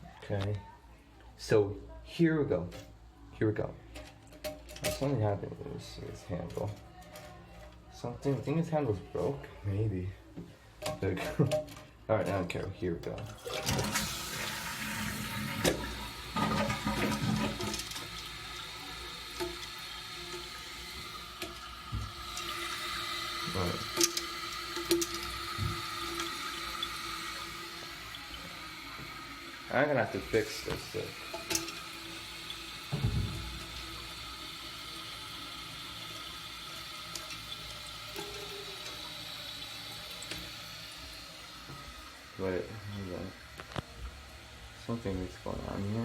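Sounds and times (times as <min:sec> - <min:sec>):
toilet flushing: 0:13.1 - 0:46.0
toilet tank refilling hiss: 0:13.3 - 0:46.0.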